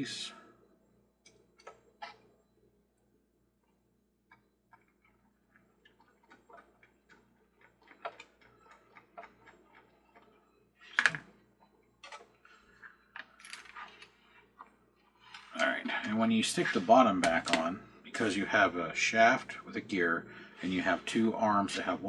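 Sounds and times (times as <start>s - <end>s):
plastic and metal parts clicking: 4.3s - 11.3s.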